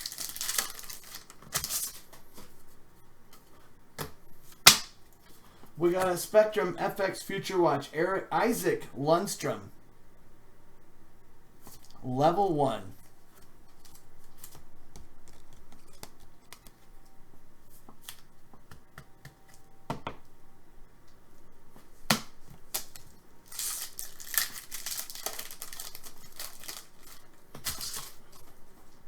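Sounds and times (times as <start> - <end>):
wrapper tearing and crinkling: 0.0 - 2.0, 22.8 - 28.2.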